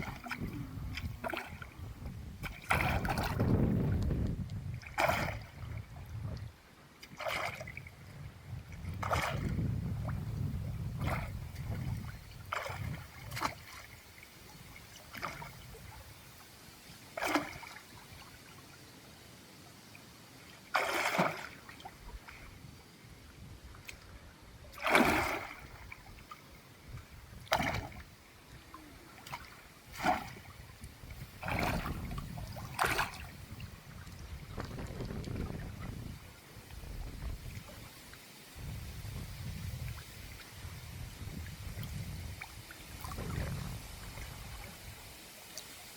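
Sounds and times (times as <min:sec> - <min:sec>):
water splashing: 0:00.0 - 0:07.9, 0:08.8 - 0:16.1, 0:17.1 - 0:18.7, 0:20.4 - 0:22.6, 0:24.7 - 0:38.1, 0:39.4 - 0:45.9.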